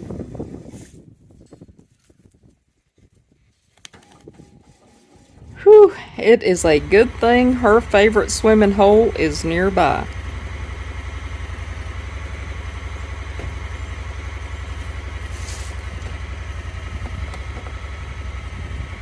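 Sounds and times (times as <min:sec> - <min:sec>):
engine running at low revs: 0:04.0 - 0:19.0.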